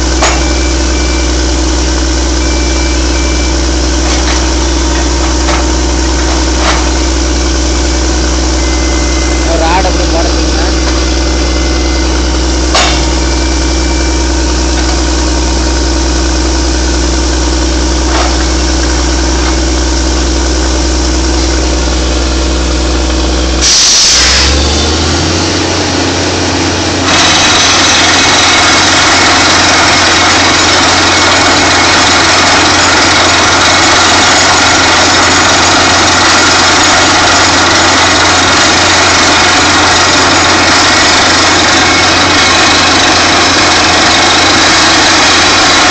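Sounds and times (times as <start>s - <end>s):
drill rig engine running: 0.0s - 45.9s
short loud burst: 23.6s - 24.7s.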